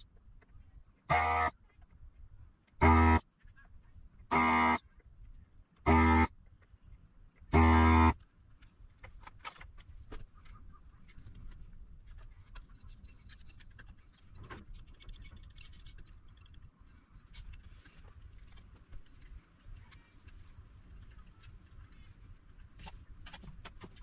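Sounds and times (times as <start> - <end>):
electronic buzzer beep: 1.1 - 1.5, 2.8 - 3.2, 4.3 - 4.8, 5.9 - 6.3, 7.6 - 8.2
tools clicking and scraping: 11.0 - 19.4.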